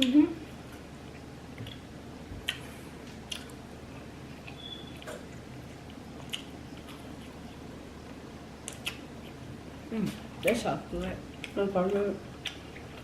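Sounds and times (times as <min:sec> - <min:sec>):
wet chewing: 0:01.1 - 0:07.6, 0:08.6 - 0:09.5, 0:11.3 - 0:13.0.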